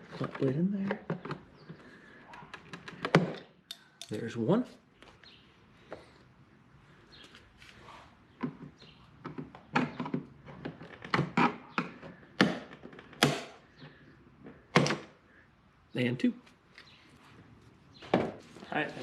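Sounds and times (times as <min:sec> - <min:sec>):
sharp clicks and knocks: 0:08.4 - 0:14.0.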